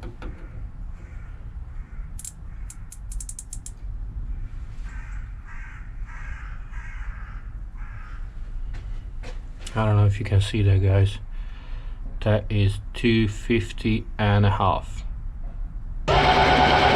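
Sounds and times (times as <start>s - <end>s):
bird cawing: 0.2s - 3.2s, 4.8s - 8.3s
sharp clicks: 2.2s - 3.8s.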